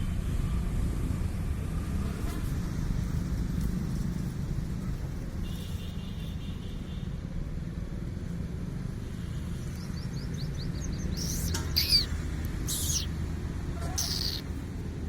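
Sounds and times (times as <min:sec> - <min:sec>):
puppies squealing: 0:11.2 - 0:12.1, 0:12.7 - 0:13.1, 0:13.8 - 0:14.4.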